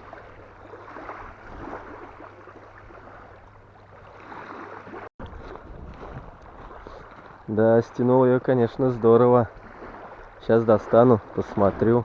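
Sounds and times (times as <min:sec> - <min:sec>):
waves lapping against shore: 0:00.0 - 0:12.0
wind buffeting microphone: 0:05.2 - 0:12.0.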